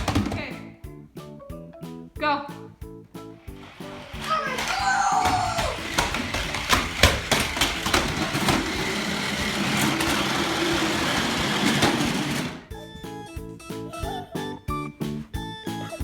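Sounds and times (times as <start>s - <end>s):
sharp knocks and clatter: 0.0s - 0.7s, 3.6s - 12.7s
toy car motor whirring: 3.4s - 12.8s.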